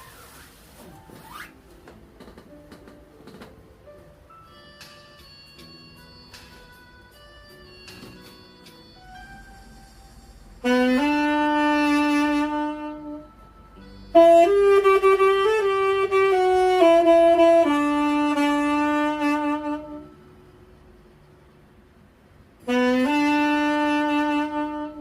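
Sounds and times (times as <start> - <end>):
wind instrument slow melody: 4.4 - 20.5, 22.6 - 25.0.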